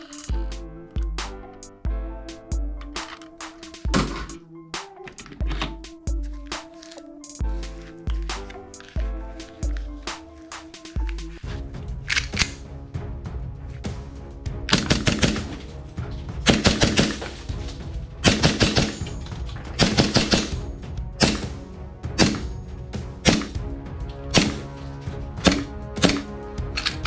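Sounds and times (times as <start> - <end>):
background music: 0.0 - 27.0
airsoft gun firing: 14.7 - 15.6, 16.5 - 17.4, 18.2 - 19.2, 19.8 - 20.6, 21.2 - 21.6, 22.2 - 22.6, 23.2 - 23.6, 24.3 - 24.8, 25.4 - 26.3.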